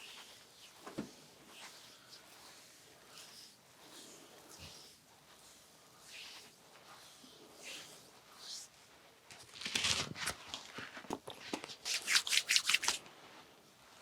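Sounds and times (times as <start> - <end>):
hands rubbing on bare skin: 0.0 - 13.1.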